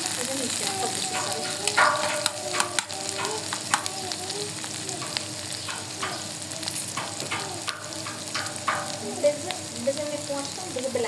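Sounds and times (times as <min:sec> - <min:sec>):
onions sizzling in a pan: 0:00.0 - 0:11.0
utensil knocking against pan: 0:00.9 - 0:09.6.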